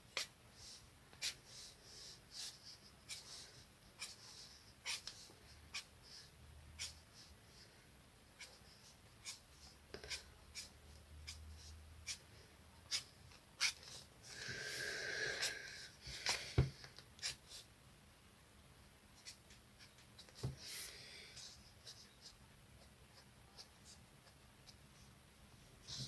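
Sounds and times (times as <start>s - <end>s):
scratchy coloring strokes on paper: 0.2s - 7.4s, 8.4s - 12.3s.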